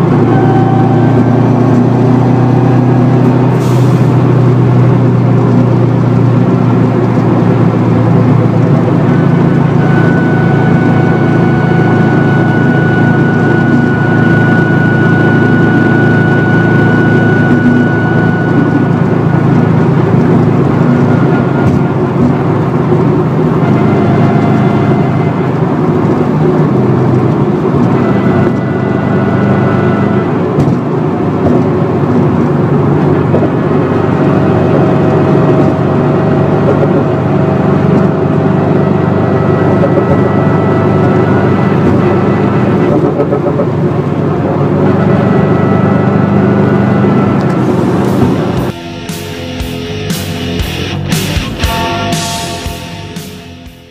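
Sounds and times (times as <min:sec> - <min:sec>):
differential whine: 0:00.0 - 0:53.9
wheel bearing drone: 0:00.0 - 0:53.9
thin high tone: 0:47.1 - 0:53.9.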